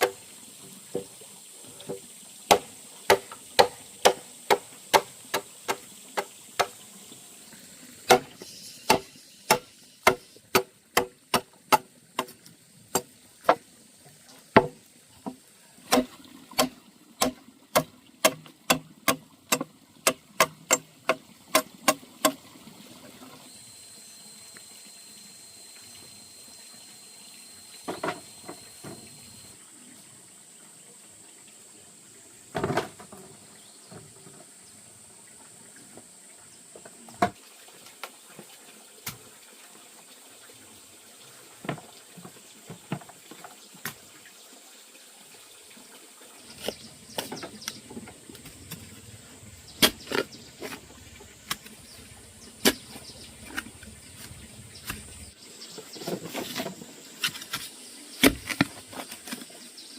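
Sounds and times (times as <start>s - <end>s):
thin steady high tone: 23.4s - 29.6s.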